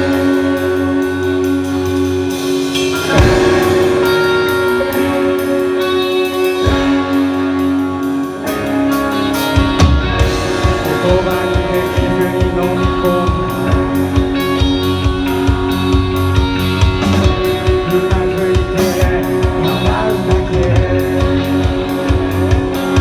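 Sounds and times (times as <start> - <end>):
rock band instrumental: 0.0 - 23.0.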